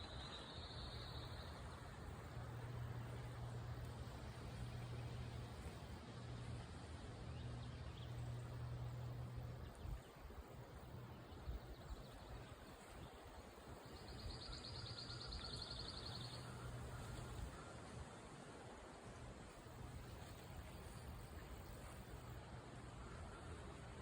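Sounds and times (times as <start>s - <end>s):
low hum: 0.0s - 12.9s.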